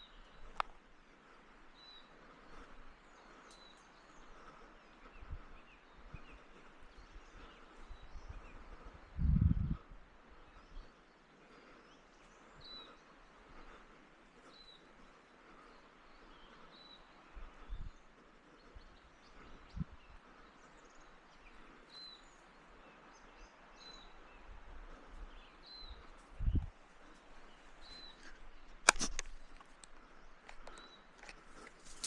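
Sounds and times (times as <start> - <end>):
bird chirping: 10.3 - 32.0.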